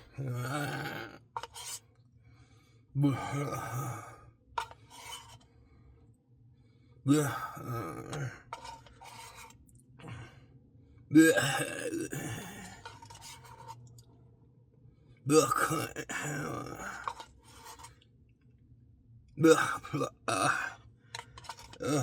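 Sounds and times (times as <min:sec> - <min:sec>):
man's drawn-out vocal outbursts: 0:00.0 - 0:01.2, 0:03.0 - 0:04.1, 0:07.1 - 0:08.4, 0:11.1 - 0:12.8, 0:15.3 - 0:17.1, 0:19.4 - 0:20.8.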